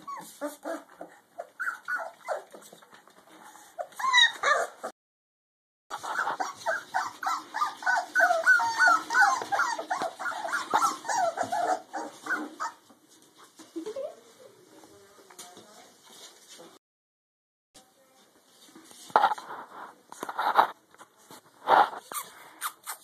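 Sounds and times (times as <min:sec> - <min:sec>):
puppies whining and yipping: 0:00.0 - 0:02.9, 0:03.5 - 0:04.9, 0:05.9 - 0:12.9.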